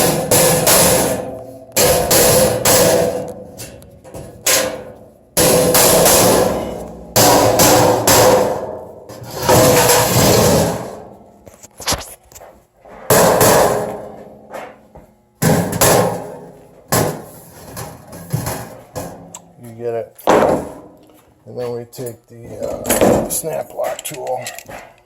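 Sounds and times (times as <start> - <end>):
heavy blows on sheet metal: 0.0 - 11.2, 13.1 - 14.8, 15.4 - 19.3, 20.3 - 21.0.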